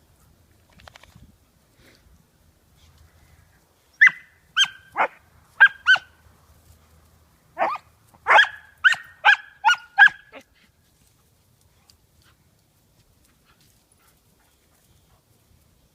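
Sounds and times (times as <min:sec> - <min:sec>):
puppy yipping: 0:04.0 - 0:06.1, 0:07.6 - 0:10.4.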